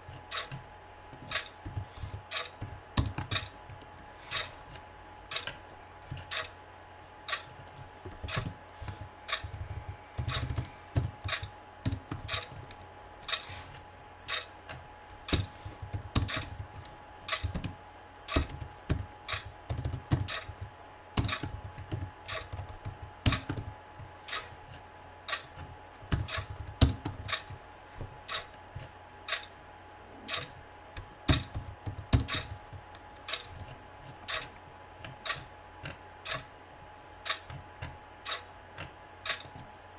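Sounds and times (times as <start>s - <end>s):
typing on computer keyboard: 1.3s - 4.0s, 8.1s - 13.4s, 15.3s - 23.7s, 26.0s - 27.6s, 31.0s - 33.7s.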